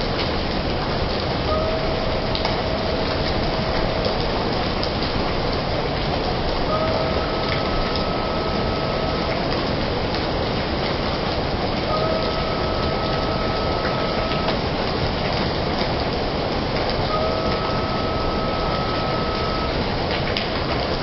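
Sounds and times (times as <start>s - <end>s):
heavy rain falling: 0.0s - 21.0s
faint steady tone: 1.5s - 4.2s, 6.7s - 9.5s, 11.9s - 14.6s, 17.1s - 19.8s.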